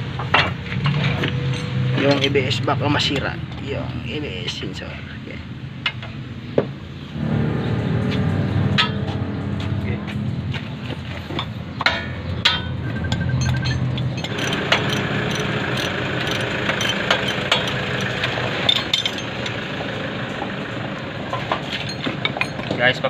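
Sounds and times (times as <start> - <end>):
steady background noise: 0.0 - 23.0
hand tools clinking on metal: 0.3 - 2.5, 11.4 - 19.6, 21.7 - 23.0.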